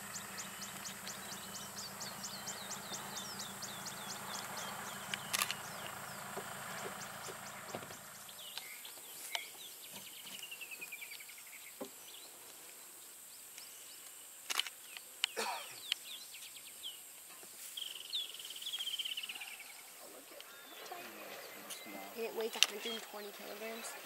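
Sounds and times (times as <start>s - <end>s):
bird chirps: 0.0s - 12.4s, 17.7s - 24.0s
insect hiss: 0.0s - 24.0s
sharp clicks: 5.0s - 6.0s.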